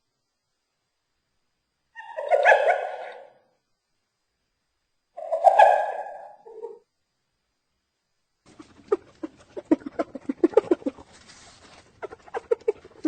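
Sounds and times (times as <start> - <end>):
hyena giggling: 8.5 - 13.0.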